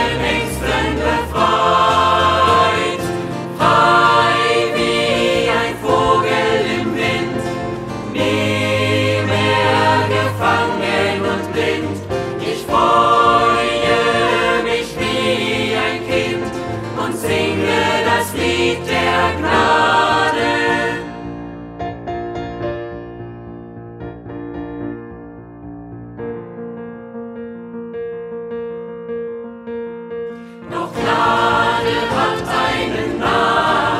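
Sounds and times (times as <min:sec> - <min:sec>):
choir singing with instruments: 0:00.0 - 0:21.6, 0:30.4 - 0:33.9.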